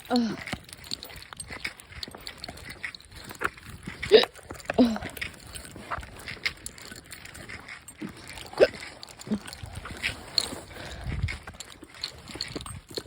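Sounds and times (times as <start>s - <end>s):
woman hiccuping: 4.1s - 5.0s.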